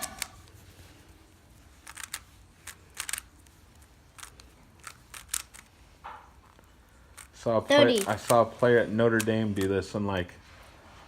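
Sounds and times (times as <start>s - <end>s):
puzzle cube clicking and snapping: 0.0s - 0.6s, 1.8s - 5.7s, 6.5s - 8.4s.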